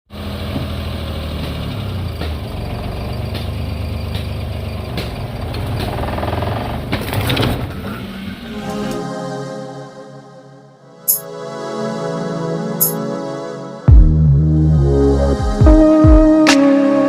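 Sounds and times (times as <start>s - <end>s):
car engine running: 0.1s - 7.8s.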